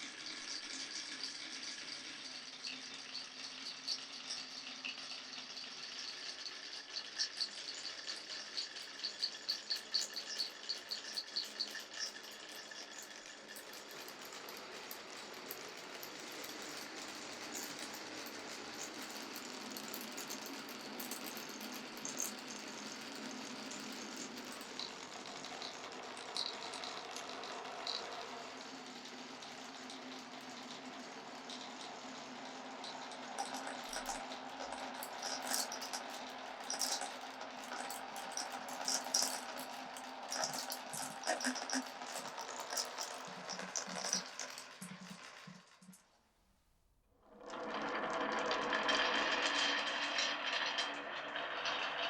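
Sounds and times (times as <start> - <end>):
marble rolling steadily: 0.0 - 46.2, 47.3 - 52.0
marbles clattering on wood: 9.2 - 28.2, 33.4 - 46.0, 47.6 - 52.0.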